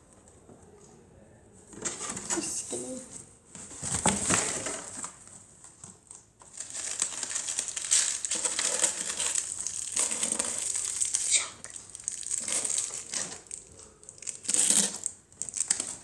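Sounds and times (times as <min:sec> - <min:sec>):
crinkling crumpling rustle: 0:03.5 - 0:16.0.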